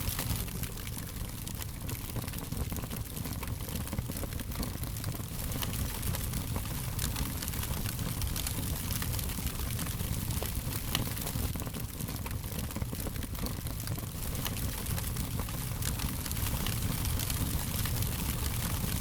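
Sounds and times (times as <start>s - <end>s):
fire crackling and popping: 0.0s - 19.0s.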